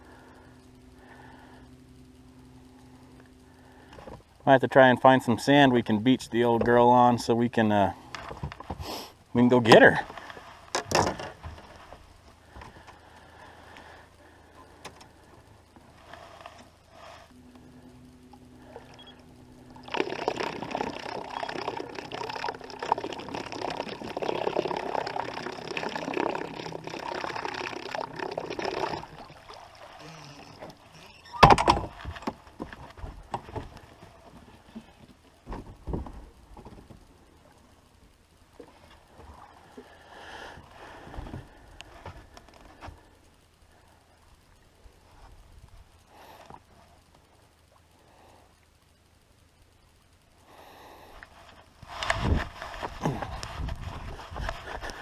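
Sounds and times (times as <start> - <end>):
boat engine hum: 0.0 - 55.0
water splashing against hull: 10.0 - 43.0.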